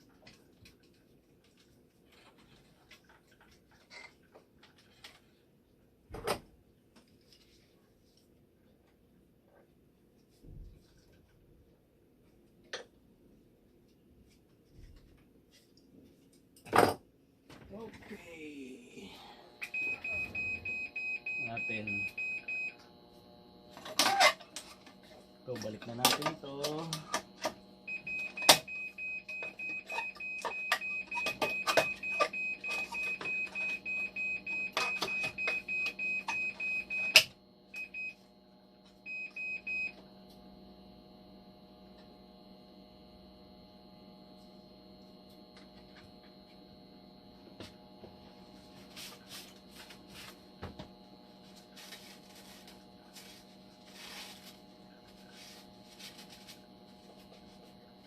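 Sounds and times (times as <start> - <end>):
machine low hum: 17.5 - 58.0
machine alarm beeping: 19.6 - 22.8, 25.1 - 40.0.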